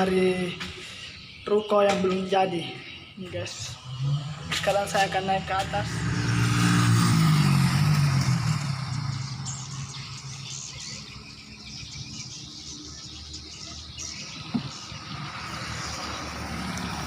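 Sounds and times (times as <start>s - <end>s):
vehicle engine passing by: 3.6s - 11.2s, 14.4s - 17.0s.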